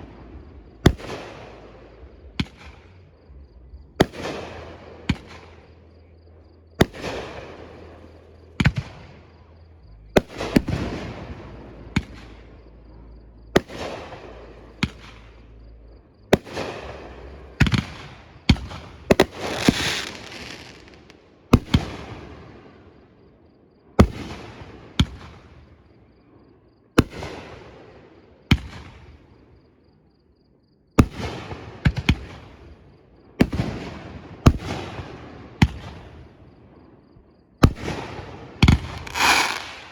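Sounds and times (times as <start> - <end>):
fireworks crackle and rumble: 0.0 - 23.4, 24.0 - 29.6, 31.0 - 39.9
fireworks bangs: 6.8 - 8.0, 10.2 - 12.6, 16.3 - 22.2, 37.6 - 39.9.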